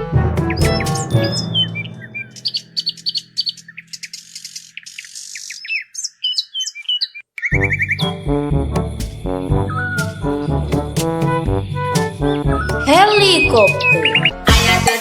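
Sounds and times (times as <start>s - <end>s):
loud music: 0.0s - 2.6s, 7.6s - 15.0s
music chord: 0.0s - 3.2s
birds chirping: 0.4s - 14.5s.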